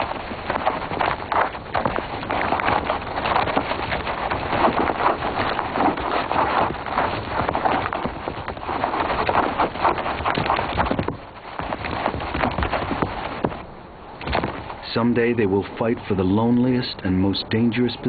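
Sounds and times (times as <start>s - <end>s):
hooves scuffling: 0.0s - 18.0s.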